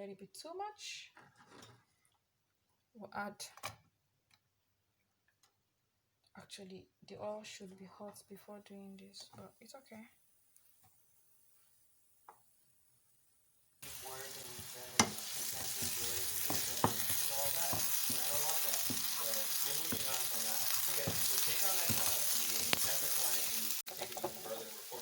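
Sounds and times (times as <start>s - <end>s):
food sizzling in oil: 10.6s - 25.0s
utensil scraping pan: 13.8s - 24.7s
utensil knocking pan: 13.8s - 25.0s.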